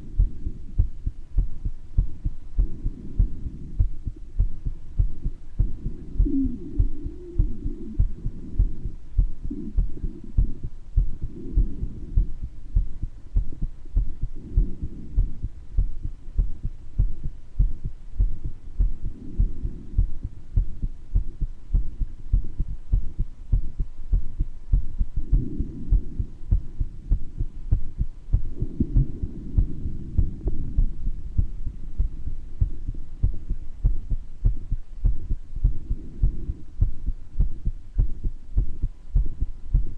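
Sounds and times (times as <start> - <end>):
heartbeat with murmur: 0.0 - 39.9
breath sounds with wheeze: 25.2 - 27.3.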